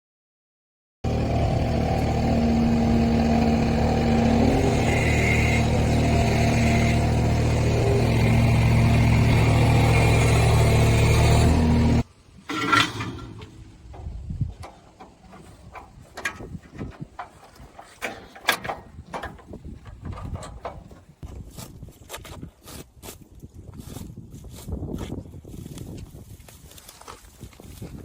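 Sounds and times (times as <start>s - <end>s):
loader engine running under load: 1.0s - 21.2s.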